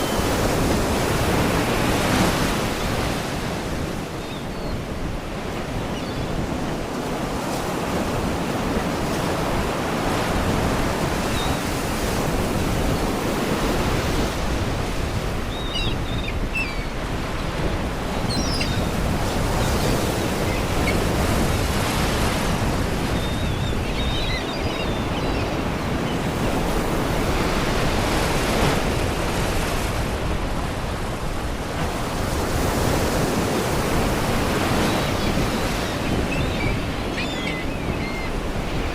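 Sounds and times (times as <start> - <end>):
faint seagull cries: 15.4 - 21.2, 34.6 - 38.9.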